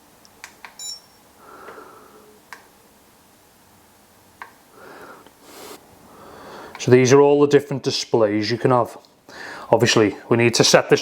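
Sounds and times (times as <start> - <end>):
short high electronic beep: 0.8 - 1.2
soft breaths: 1.3 - 2.4, 4.7 - 6.9, 9.2 - 10.3.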